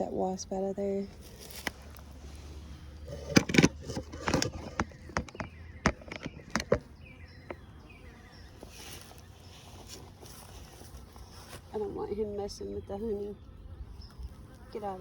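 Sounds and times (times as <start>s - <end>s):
hive parts clicking and scraping: 1.2s - 2.4s, 3.0s - 7.9s.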